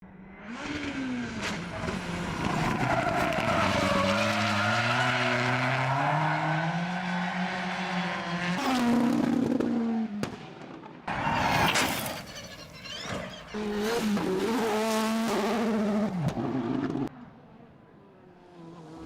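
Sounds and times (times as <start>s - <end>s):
race car engine accelerating: 13.1s - 17.1s.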